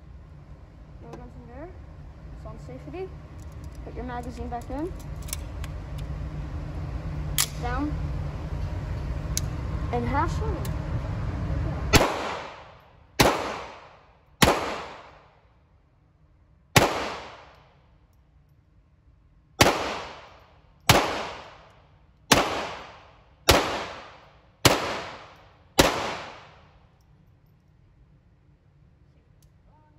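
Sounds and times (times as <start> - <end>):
pistol shots with echo: 11.9 - 15.2, 16.8 - 17.6, 19.6 - 21.6, 22.3 - 26.7.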